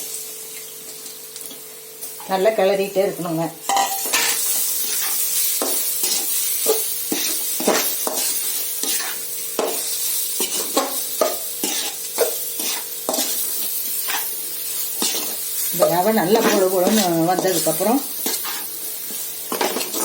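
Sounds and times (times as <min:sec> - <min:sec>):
semolina sizzling in hot oil: 0:00.0 - 0:20.0
utensil scraping pan: 0:03.7 - 0:09.8, 0:10.4 - 0:14.3, 0:15.0 - 0:15.4.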